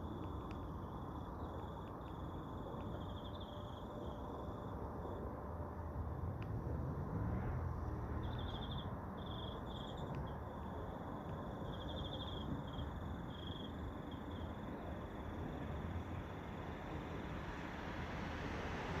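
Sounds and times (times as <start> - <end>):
insects chirping in trills: 8.2 - 17.1.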